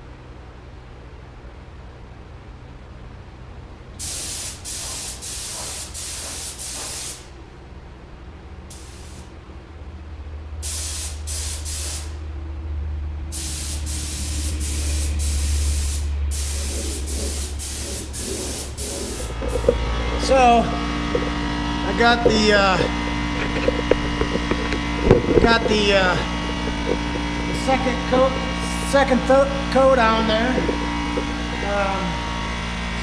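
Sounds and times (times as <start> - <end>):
paint spray gun hissing: 4.0 - 7.3, 8.7 - 9.3, 10.6 - 12.2, 13.3 - 20.3, 23.6 - 29.0
steady low hum: 5.3 - 33.0.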